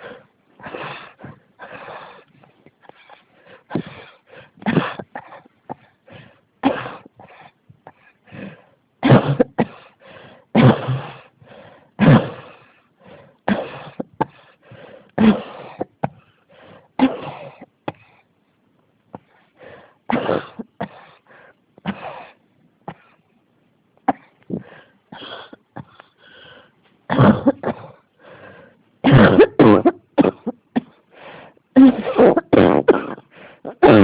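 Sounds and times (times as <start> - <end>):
breaths between coughs: 0.0 - 18.3, 19.1 - 23.2, 24.0 - 34.0
person coughing: 2.9 - 6.0, 6.6 - 8.1, 9.0 - 9.9, 10.6 - 11.2, 12.0 - 12.5, 13.5 - 14.4, 15.2 - 16.2, 17.0 - 18.2, 20.1 - 21.2, 27.1 - 28.0, 29.0 - 31.0, 31.8 - 34.0.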